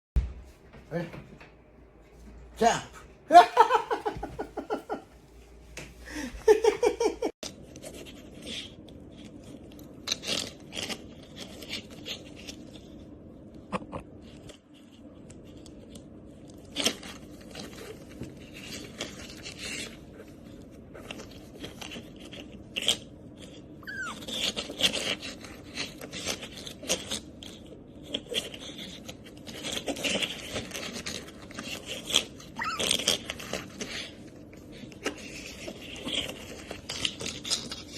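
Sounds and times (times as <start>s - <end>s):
toys and claws scraping and clicking: 7.4s - 37.9s
otter squeaking: 32.5s - 33.2s.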